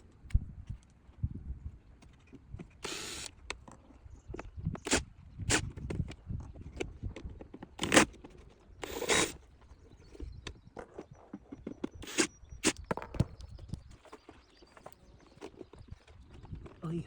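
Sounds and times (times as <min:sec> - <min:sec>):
short scraping rasps: 0:04.8 - 0:05.8, 0:08.8 - 0:09.4, 0:11.9 - 0:13.0.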